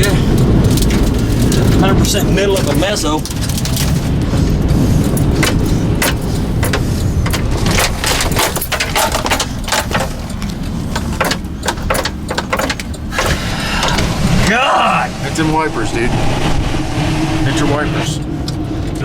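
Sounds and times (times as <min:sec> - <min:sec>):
hail and debris pelting car body: 0:00.0 - 0:14.6
wind roaring and buffeting a car: 0:00.0 - 0:19.0.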